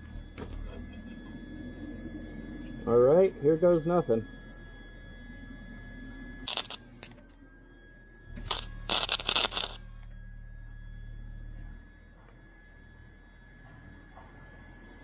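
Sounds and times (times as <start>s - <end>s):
welder machine humming: 0.0s - 7.4s, 8.2s - 12.5s
welding arc crackle: 6.5s - 7.2s, 8.4s - 10.0s.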